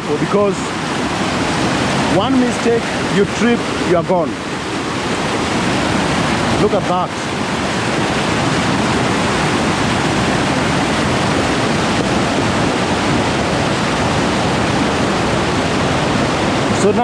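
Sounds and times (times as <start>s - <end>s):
waterfall roaring: 0.0s - 17.0s.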